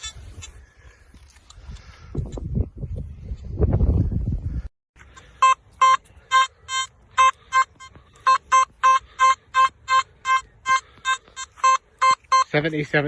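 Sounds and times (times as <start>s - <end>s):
metal detector beeping: 0.0s - 0.6s, 5.1s - 13.0s.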